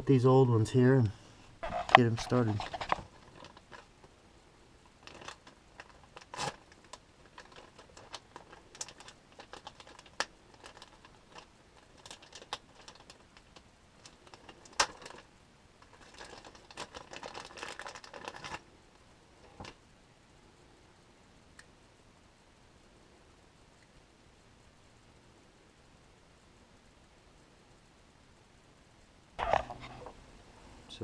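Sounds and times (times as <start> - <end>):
small scrapes and clicks: 1.6 - 3.8.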